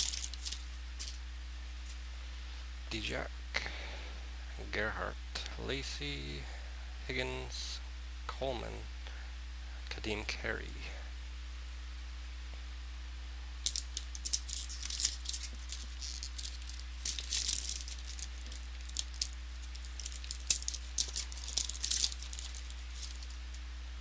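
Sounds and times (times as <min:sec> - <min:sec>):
cards and wrapping crinkling: 0:00.0 - 0:01.2, 0:13.6 - 0:23.6
low electrical hum: 0:00.0 - 0:24.0.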